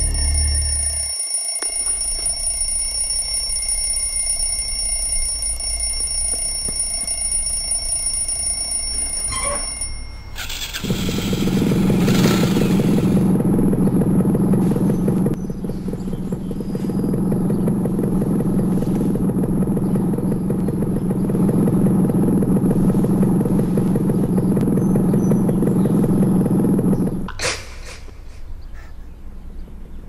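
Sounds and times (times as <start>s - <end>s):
low hum: 0.0s - 27.4s
vehicle engine drone: 0.0s - 30.0s.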